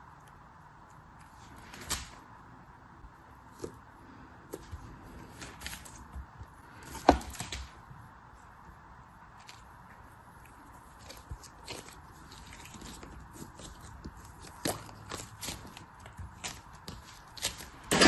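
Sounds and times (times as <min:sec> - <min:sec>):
packaging clicks and rustles: 0:10.9 - 0:18.0.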